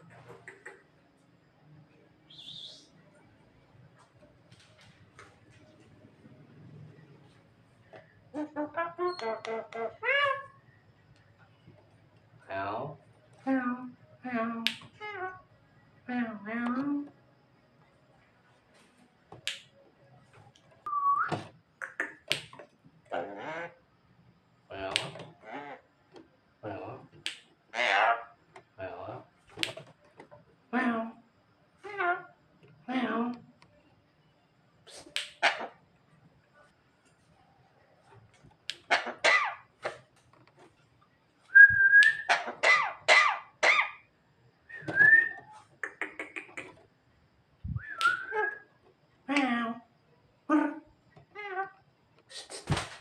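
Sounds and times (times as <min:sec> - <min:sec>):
bird whistling: 0:02.3 - 0:02.9, 0:20.9 - 0:21.4, 0:41.5 - 0:42.3, 0:44.7 - 0:45.5, 0:47.7 - 0:48.6.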